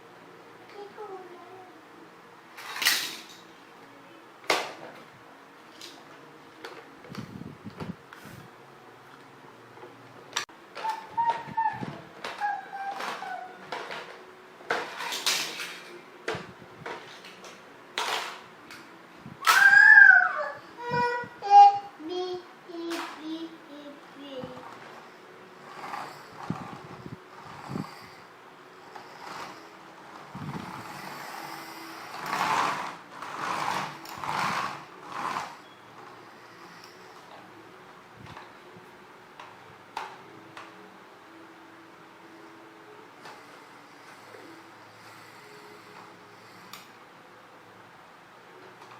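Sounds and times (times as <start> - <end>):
plastic toys clattering: 2.6 - 3.4, 12.2 - 16.0, 16.9 - 18.4
plastic toy truck scraping: 25.7 - 28.2, 28.9 - 35.6.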